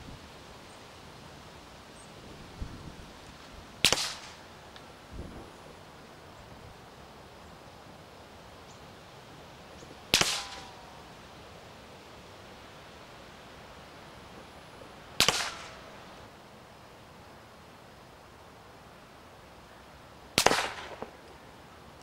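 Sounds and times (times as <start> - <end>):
suppressed rifle shots: 3.8 - 4.4, 10.1 - 10.8, 15.2 - 15.9, 20.4 - 21.2.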